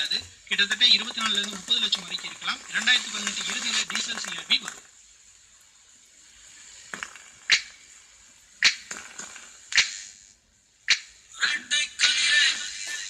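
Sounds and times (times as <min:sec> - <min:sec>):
radio speaker hiss: 0:00.0 - 0:13.0
sharp short clicks: 0:08.6 - 0:10.1.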